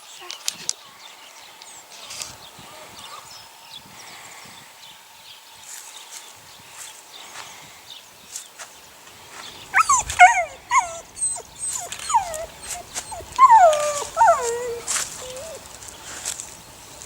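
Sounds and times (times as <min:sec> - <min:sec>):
puppies whining: 0:09.7 - 0:15.7.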